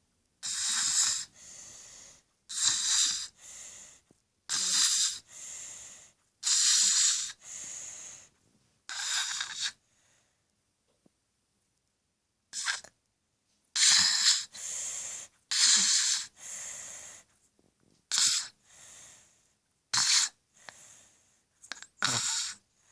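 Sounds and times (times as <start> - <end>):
person snoring: 0.4 - 3.4, 4.5 - 5.3.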